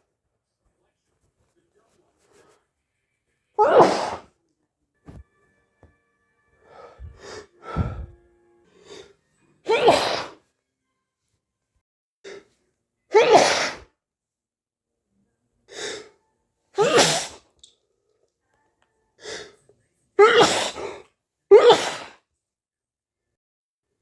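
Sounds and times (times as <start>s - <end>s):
person sneezing: 3.6s - 4.3s, 6.7s - 8.1s, 9.7s - 10.4s, 13.1s - 13.9s, 16.8s - 17.4s, 20.2s - 22.2s.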